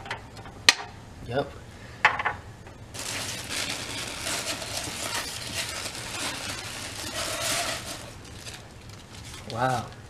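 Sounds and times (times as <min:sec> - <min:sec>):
packaging rustling: 0:03.0 - 0:10.0.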